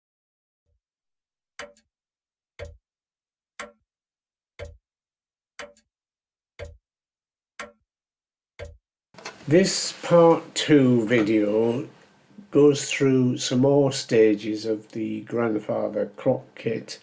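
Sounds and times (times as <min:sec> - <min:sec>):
grandfather clock ticking: 0:05.6 - 0:05.8, 0:08.6 - 0:12.0.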